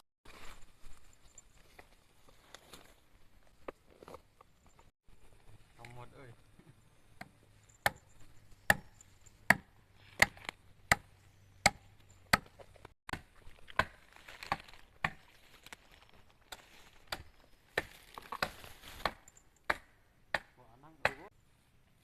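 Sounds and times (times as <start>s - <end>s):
wood being chopped: 7.2s - 8.0s, 8.6s - 15.3s, 16.5s - 21.3s.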